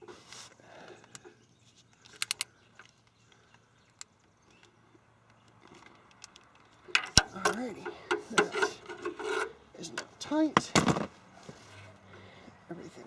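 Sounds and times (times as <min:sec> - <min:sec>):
faint rustling handling sounds: 0:00.0 - 0:13.0
sharp metallic clicks: 0:01.9 - 0:09.2.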